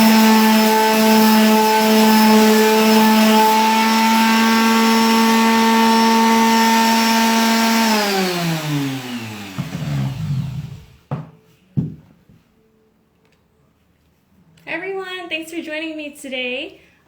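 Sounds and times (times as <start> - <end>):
electric sander motor whine: 0.0 - 11.0.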